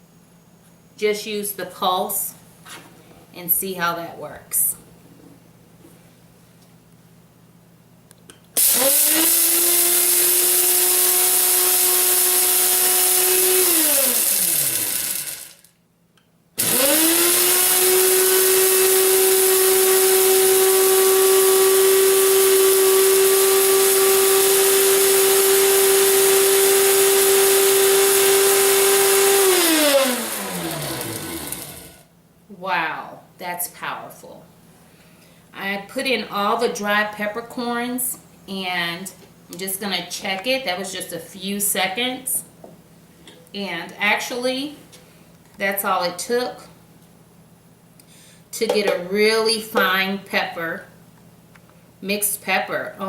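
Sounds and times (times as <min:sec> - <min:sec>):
blender grinding peppercorns: 0:08.6 - 0:15.8, 0:16.6 - 0:32.0.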